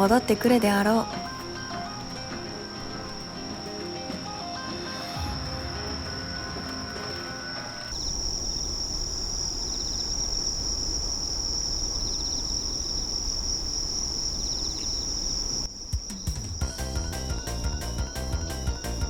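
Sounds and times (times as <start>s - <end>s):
music: 0.0s - 7.9s, 16.0s - 19.0s
insects trilling: 0.0s - 19.0s.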